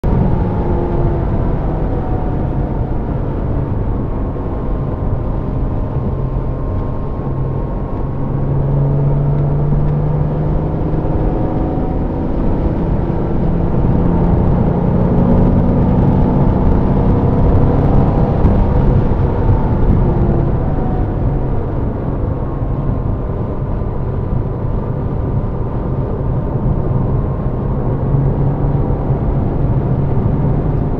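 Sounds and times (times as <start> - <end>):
car engine from inside cabin: 0.0 - 30.9
tyre and road noise: 0.0 - 30.9.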